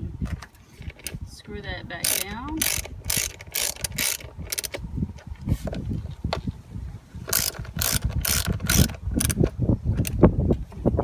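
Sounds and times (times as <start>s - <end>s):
wind rumble on microphone: 0.0s - 11.0s
ratchet wrench clicking: 2.0s - 4.8s, 7.3s - 10.2s.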